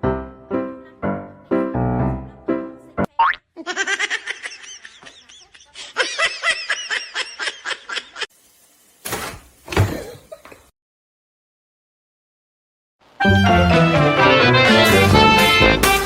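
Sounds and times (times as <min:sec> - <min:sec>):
person laughing high-pitched: 0:03.6 - 0:08.3.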